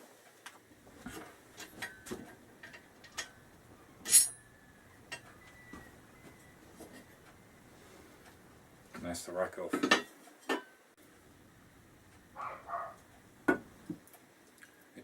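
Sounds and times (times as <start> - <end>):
metal tools clicking and clinking: 1.6 - 3.4, 4.0 - 5.4
loud ringing metallic clink: 4.0 - 5.2.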